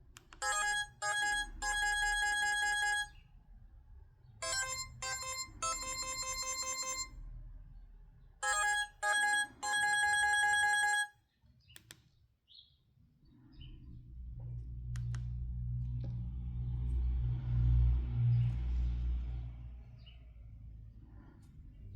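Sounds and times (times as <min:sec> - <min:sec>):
beeping electronic ringtone: 0:00.4 - 0:03.2, 0:04.4 - 0:07.1, 0:08.4 - 0:11.1.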